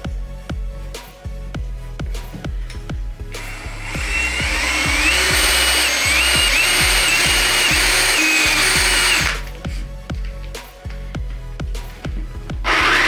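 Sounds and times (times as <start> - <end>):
background music with steady beat: 0.0 - 13.0
power tool motor whine: 3.4 - 9.4, 12.7 - 13.0.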